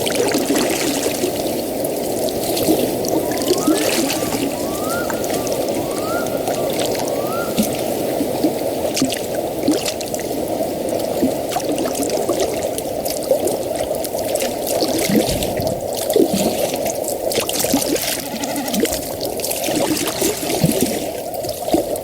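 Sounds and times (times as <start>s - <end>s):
water gurgles and drips: 0.0s - 22.0s
water trickling: 0.0s - 22.0s.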